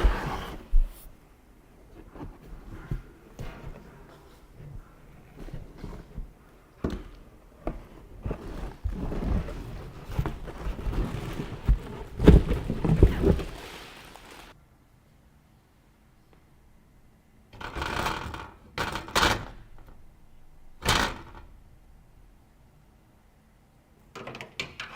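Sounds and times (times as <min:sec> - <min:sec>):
rustling: 0:07.6 - 0:14.6.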